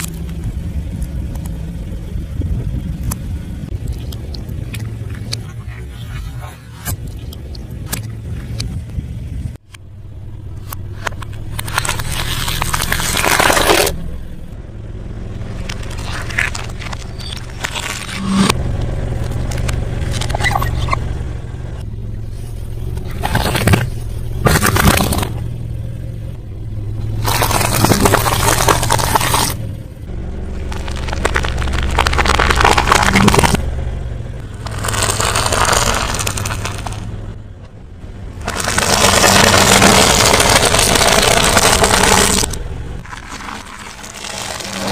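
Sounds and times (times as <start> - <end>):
crunching and chewing food: 0.0 - 0.4, 10.7 - 14.0, 15.6 - 18.5, 22.3 - 25.4, 27.1 - 29.6, 30.5 - 33.6, 34.5 - 37.1, 38.4 - 44.9.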